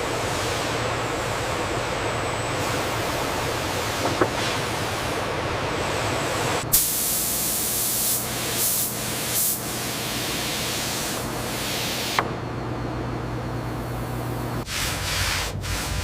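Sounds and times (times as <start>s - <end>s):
loud steady spraying hiss: 6.7s - 12.2s.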